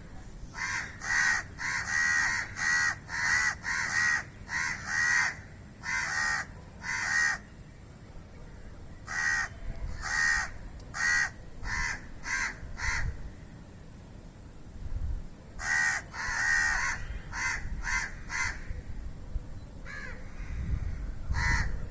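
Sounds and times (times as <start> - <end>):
crow cawing: 0.5 - 7.5, 9.1 - 13.2, 15.6 - 18.8, 19.8 - 21.8.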